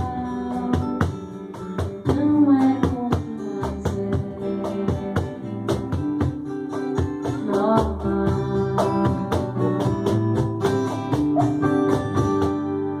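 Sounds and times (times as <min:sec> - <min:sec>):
person singing: 0:00.0 - 0:01.2, 0:02.1 - 0:05.5, 0:07.2 - 0:10.0
cajon hits: 0:00.0 - 0:12.8
guitar-backed pop song: 0:00.0 - 0:13.0.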